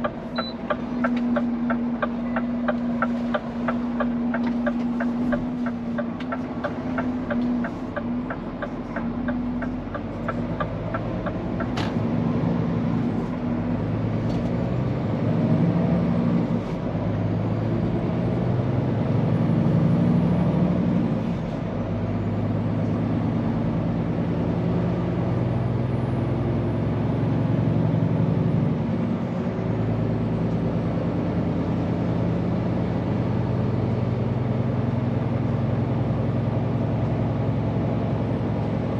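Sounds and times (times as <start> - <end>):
turn signal ticking: 0.0 - 11.9
truck diesel engine under load: 0.0 - 38.9.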